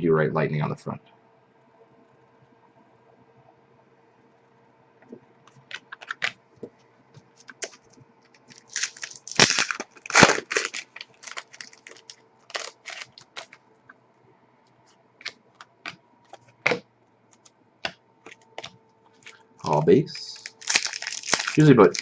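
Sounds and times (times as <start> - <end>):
cards clicking: 5.5 - 6.4
wrapper crinkling and tearing: 5.7 - 6.3, 7.4 - 7.8, 8.4 - 13.6, 20.2 - 22.0.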